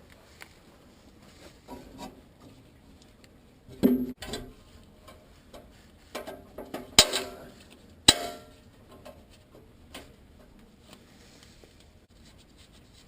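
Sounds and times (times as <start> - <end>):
hand tools clanking on metal: 6.2 - 8.6.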